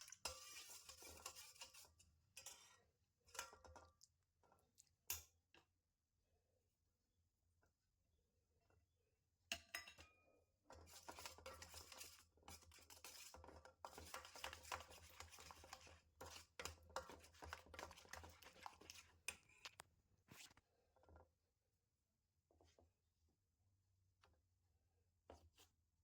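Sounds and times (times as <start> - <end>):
utensil scraping a bowl: 0.1 - 2.8, 10.8 - 20.6.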